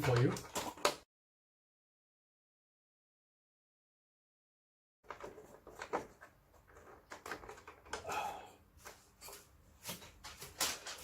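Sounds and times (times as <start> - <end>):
plastic casing rattling: 0.0 - 1.0, 5.1 - 8.1.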